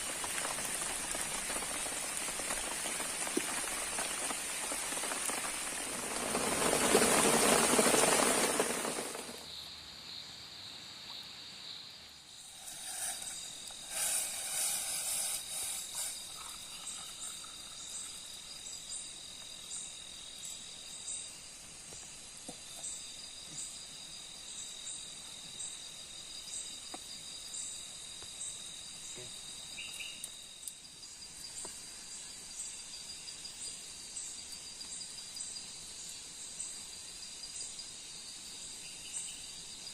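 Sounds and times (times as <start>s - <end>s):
heavy rain falling: 0.0s - 9.4s
insects trilling: 0.0s - 39.9s
short insect chirps: 0.0s - 39.9s.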